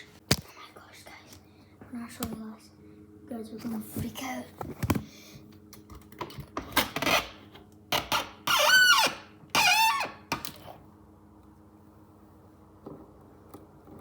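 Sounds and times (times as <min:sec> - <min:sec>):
high-pitched squeaks: 0:08.0 - 0:10.2.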